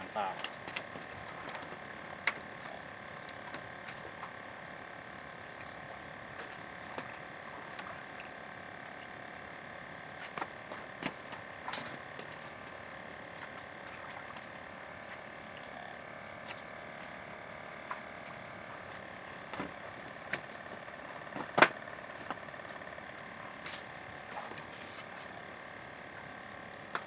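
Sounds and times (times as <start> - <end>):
motor running: 0.0 - 27.0.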